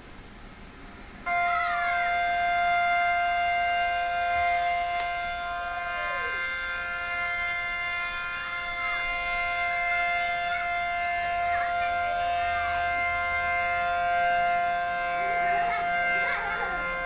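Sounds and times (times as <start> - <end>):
warning siren steady chord: 0.8 - 17.0.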